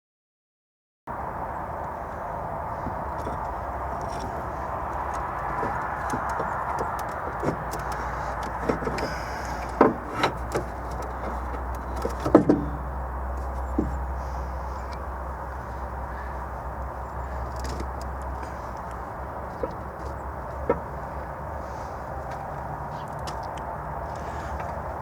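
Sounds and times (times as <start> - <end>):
knocks and clunks on car engine: 2.9 - 14.1, 17.4 - 21.5.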